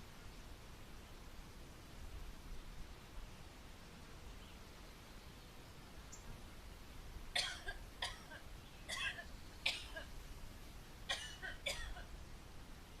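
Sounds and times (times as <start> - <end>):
woman coughing: 7.4 - 10.1, 11.1 - 12.0.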